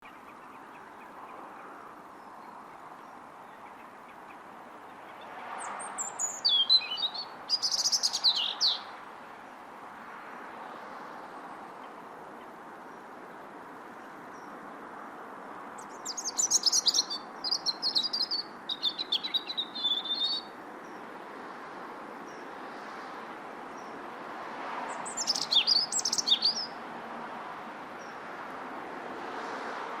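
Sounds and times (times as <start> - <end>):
bird singing high chirps: 5.0 - 8.9, 15.8 - 20.6, 24.9 - 26.8.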